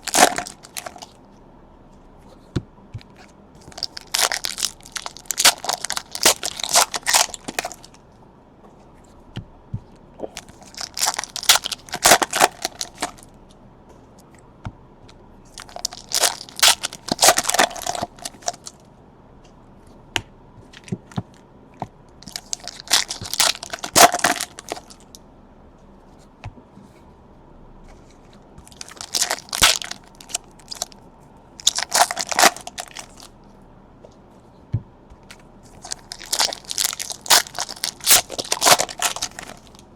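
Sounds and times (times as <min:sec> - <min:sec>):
card pack wrappers tearing and crinkling: 0:00.0 - 0:01.2, 0:03.6 - 0:08.0, 0:10.4 - 0:13.2, 0:15.6 - 0:18.8, 0:22.2 - 0:25.1, 0:28.6 - 0:31.0, 0:31.6 - 0:33.3, 0:35.8 - 0:39.8.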